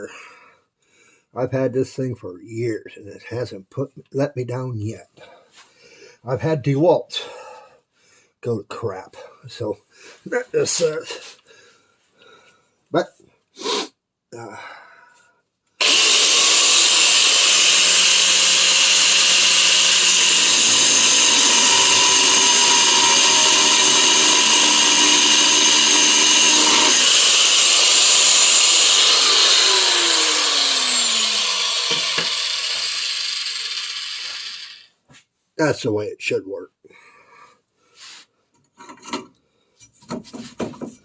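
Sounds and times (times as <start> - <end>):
angle grinder cutting steel: 15.8 - 34.9
grinder motor winding down: 15.8 - 34.9.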